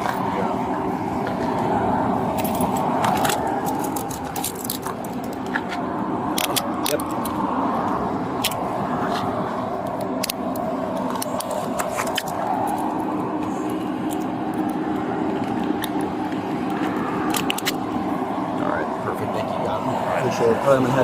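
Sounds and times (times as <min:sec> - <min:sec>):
vehicle engine idling: 0:00.0 - 0:21.0
sharp clicks: 0:15.4 - 0:17.8.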